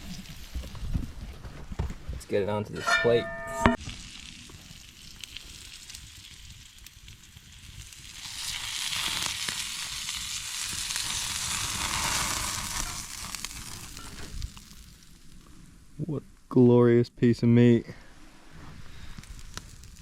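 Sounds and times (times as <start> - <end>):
food sizzling over campfire: 0.0 - 1.0, 3.8 - 16.6, 18.1 - 20.0.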